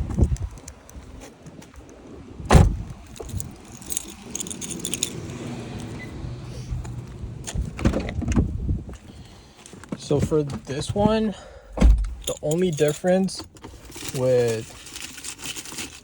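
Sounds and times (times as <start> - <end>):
small metal pieces jingling: 3.0 - 6.0, 12.1 - 16.0.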